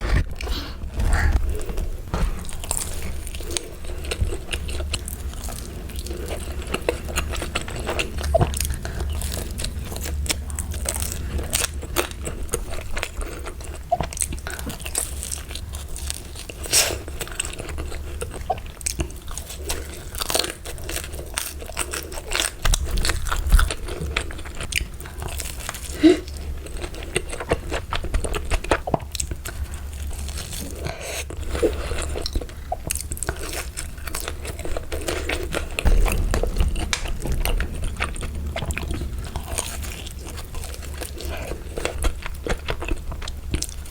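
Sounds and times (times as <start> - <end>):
steady low hum: 0.0 - 13.9, 34.5 - 43.9
person chewing crunchy food: 0.0 - 43.9.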